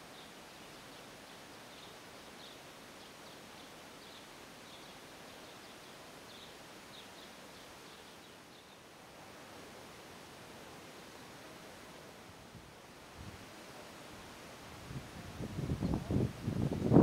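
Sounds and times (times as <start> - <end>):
faint bird chirps: 0.0 - 8.9
steady background hiss: 0.0 - 17.0.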